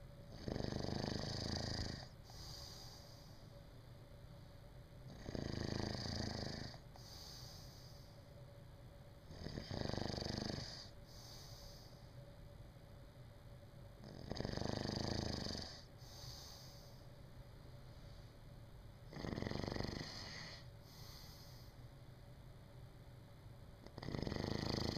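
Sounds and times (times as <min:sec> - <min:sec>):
person snoring: 0:00.3 - 0:03.3, 0:05.1 - 0:08.0, 0:09.3 - 0:11.9, 0:14.0 - 0:17.0, 0:19.1 - 0:21.8, 0:23.9 - 0:24.9
soft breath: 0:01.4 - 0:03.7, 0:06.6 - 0:08.6, 0:10.4 - 0:12.4, 0:15.6 - 0:18.6, 0:19.8 - 0:22.0.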